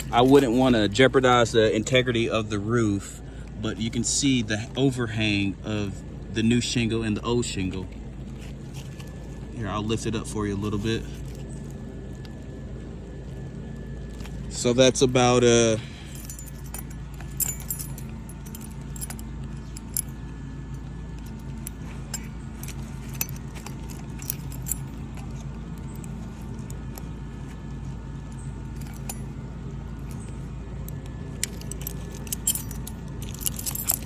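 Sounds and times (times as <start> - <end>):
steady low hum: 0.0 - 34.0
metallic clicks and jingling of tools: 16.0 - 20.2, 21.1 - 27.1, 28.4 - 29.3, 30.9 - 34.0.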